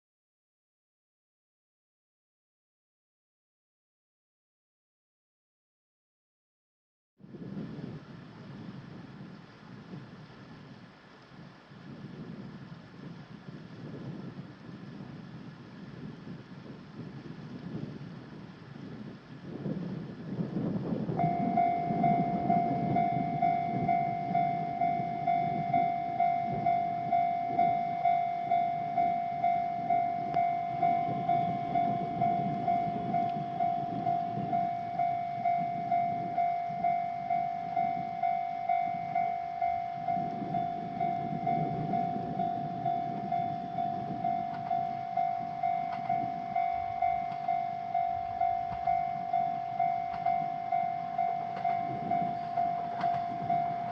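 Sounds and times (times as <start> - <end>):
low uneven rumble: 7.3 - 53.9
level crossing alarm pulsing: 21.2 - 53.9.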